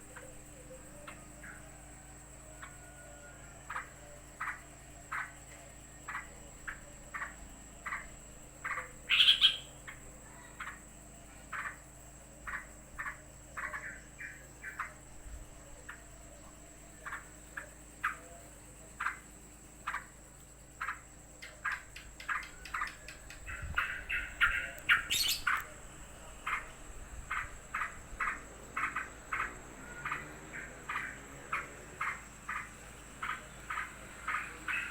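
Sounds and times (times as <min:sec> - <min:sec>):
bird giving sharp agitated calls: 0:08.7 - 0:09.8.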